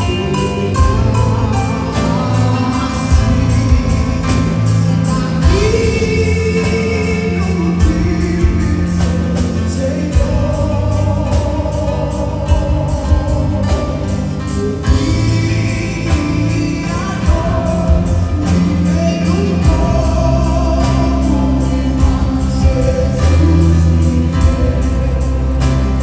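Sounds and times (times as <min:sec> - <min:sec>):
band playing steady beat: 0:00.0 - 0:26.0
gospel singing: 0:00.0 - 0:26.0.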